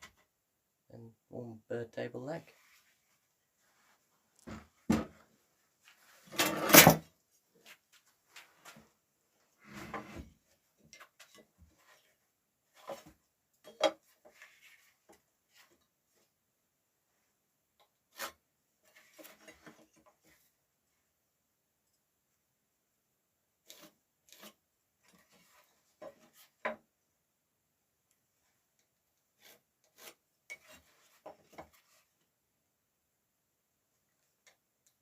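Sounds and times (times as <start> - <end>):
timber knocking and clunking: 4.4 - 5.2.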